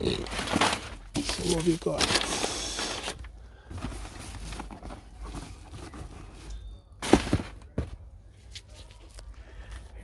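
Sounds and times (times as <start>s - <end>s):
packaging rustling: 0.0s - 7.8s.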